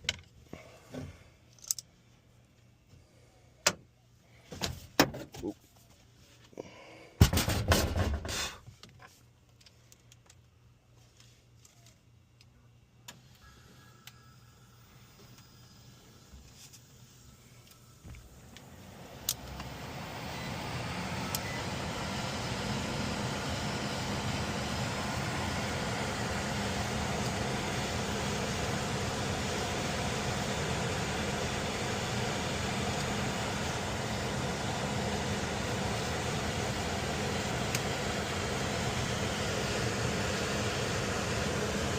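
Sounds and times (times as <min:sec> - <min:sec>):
blower motor rush of air: 0:18.4 - 0:41.9.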